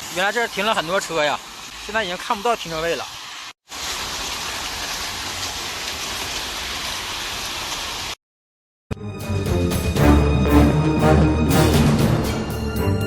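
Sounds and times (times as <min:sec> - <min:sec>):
heavy rain pouring: 0:00.0 - 0:08.2.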